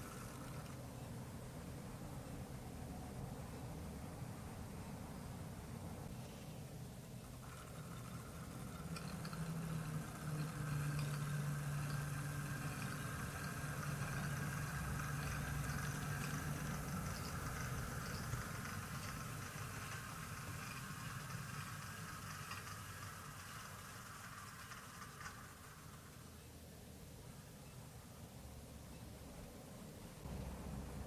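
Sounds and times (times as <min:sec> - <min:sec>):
wheels ticking on track: 0:00.0 - 0:04.0, 0:06.9 - 0:26.5
model train motor hum: 0:00.0 - 0:27.2, 0:29.5 - 0:31.0.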